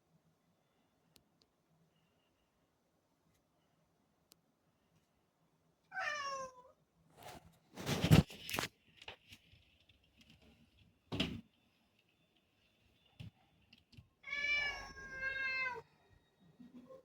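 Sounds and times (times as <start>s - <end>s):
cat meowing: 5.9s - 6.8s, 14.2s - 15.9s.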